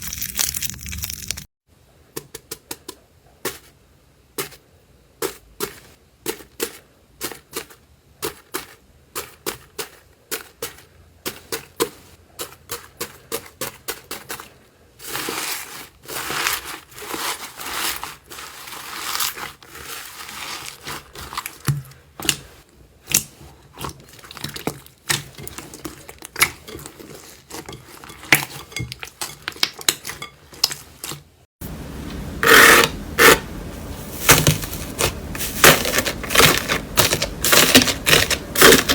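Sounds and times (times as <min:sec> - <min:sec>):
slime crackling and crunching: 0:00.0 - 0:01.5, 0:15.0 - 0:31.2, 0:34.2 - 0:38.9.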